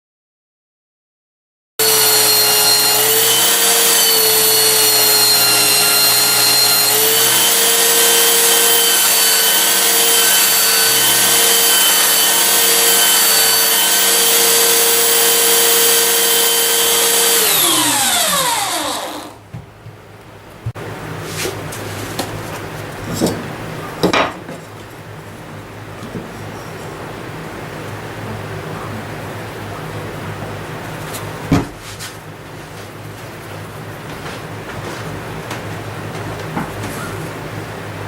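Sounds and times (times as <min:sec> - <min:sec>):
electric power tool motor whining: 0:01.8 - 0:19.4.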